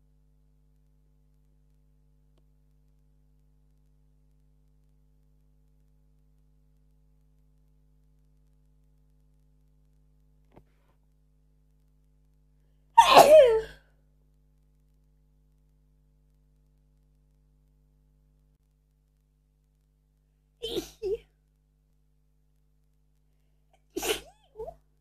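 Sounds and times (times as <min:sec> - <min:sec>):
person sneezing: 0:13.0 - 0:13.8, 0:20.6 - 0:21.2, 0:23.8 - 0:24.7.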